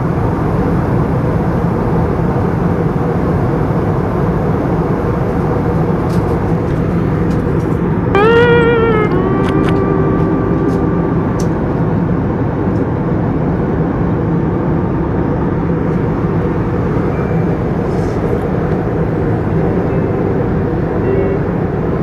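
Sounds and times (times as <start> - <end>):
jet engine cabin rush: 4.8 - 8.2
engine whine: 5.1 - 12.2.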